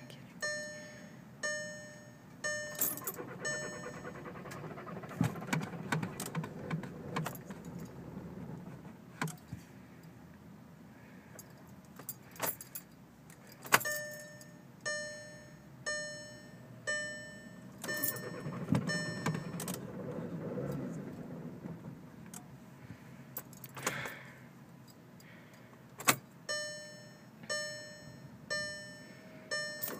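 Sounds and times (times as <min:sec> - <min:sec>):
dashboard warning chime: 0:00.0 - 0:04.8, 0:13.8 - 0:19.9, 0:26.5 - 0:29.9
keys jangling in ignition: 0:02.7 - 0:08.5, 0:11.4 - 0:14.5, 0:17.8 - 0:20.8
low rumble: 0:03.0 - 0:09.2, 0:17.8 - 0:23.1.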